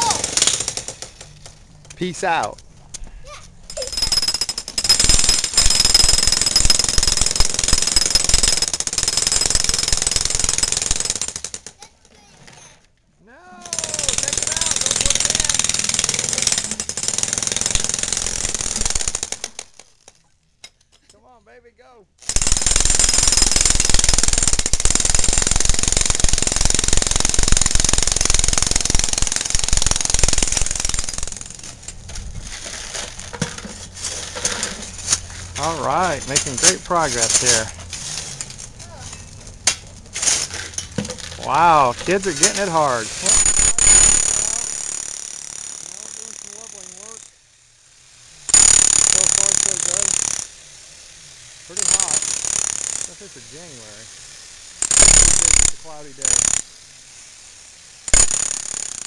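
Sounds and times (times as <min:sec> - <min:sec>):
jackhammer hammering concrete: 0:00.0 - 0:01.4, 0:03.7 - 0:11.9, 0:13.6 - 0:20.2, 0:22.2 - 0:32.0, 0:32.6 - 0:37.7, 0:41.0 - 0:47.4, 0:48.3 - 0:50.6, 0:51.7 - 0:53.8, 0:54.4 - 0:56.7, 0:58.0 - 0:59.0.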